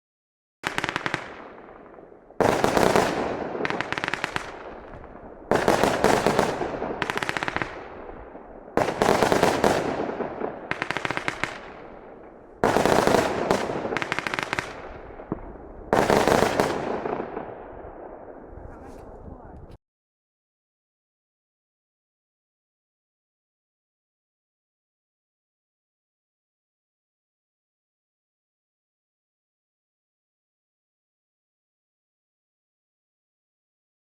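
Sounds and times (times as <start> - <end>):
firework shots firing in volleys: 0.6 - 19.0.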